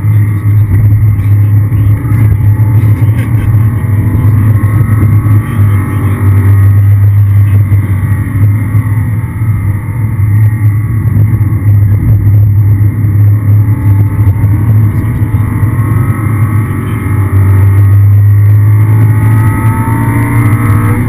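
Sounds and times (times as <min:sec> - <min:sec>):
car engine droning: 0:00.0 - 0:21.0.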